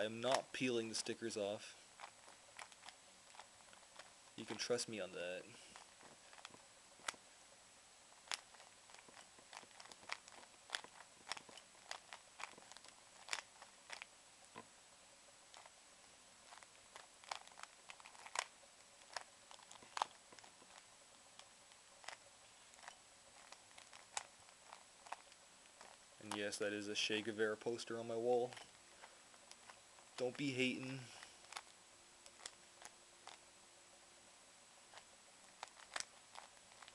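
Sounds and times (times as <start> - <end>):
puzzle cube plastic clicks: 0.2 - 1.1, 2.0 - 4.8, 8.2 - 14.7, 16.4 - 27.1, 27.7 - 33.4, 34.8 - 36.9.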